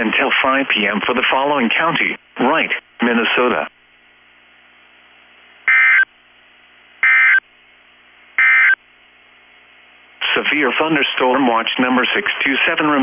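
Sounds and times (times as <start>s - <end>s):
faint radio hiss: 0.0s - 13.0s
digital data tone bursts: 5.7s - 6.1s, 7.0s - 7.4s, 8.4s - 8.8s.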